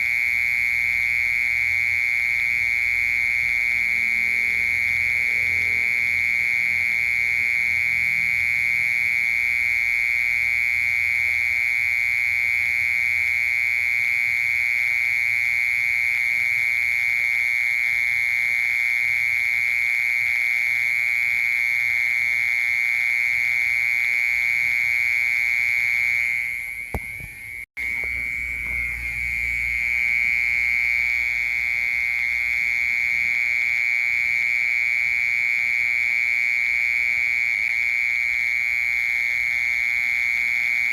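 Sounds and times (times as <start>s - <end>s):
cricket trilling: 0.0s - 40.9s.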